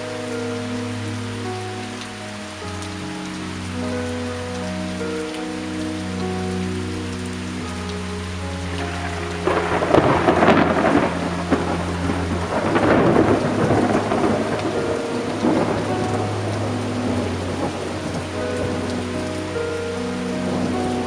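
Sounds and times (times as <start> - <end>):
steady rain falling: 0.0 - 21.0
thunder rumbling: 7.6 - 21.0.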